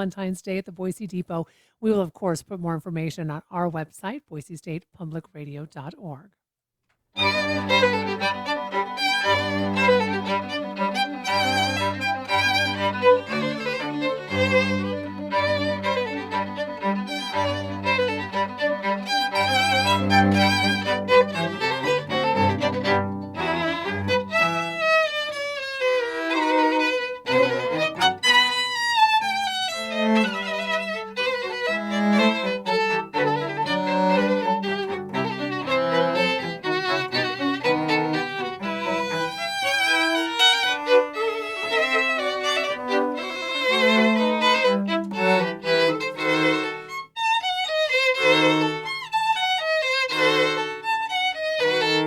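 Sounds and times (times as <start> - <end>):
baroque orchestra playing: 7.2 - 24.5, 29.9 - 46.9
low bowed strings: 7.2 - 52.0
violin melody: 7.2 - 52.0.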